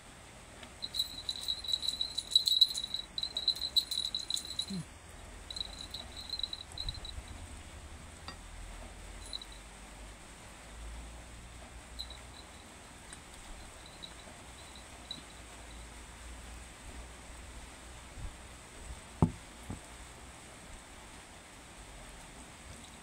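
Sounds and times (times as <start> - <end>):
insect trilling: 0.8 - 4.8, 5.5 - 7.2.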